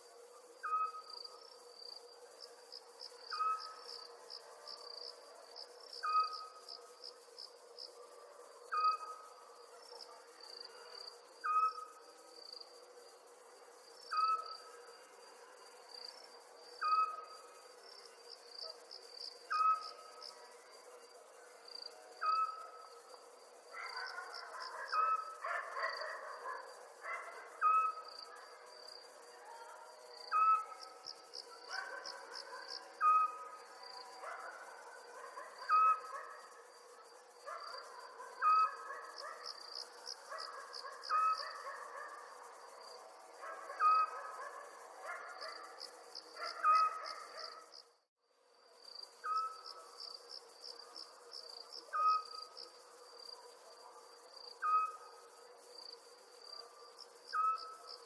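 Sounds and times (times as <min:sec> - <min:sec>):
crickets chirping in trills: 0:00.0 - 0:58.0
insect hum: 0:00.0 - 0:58.0.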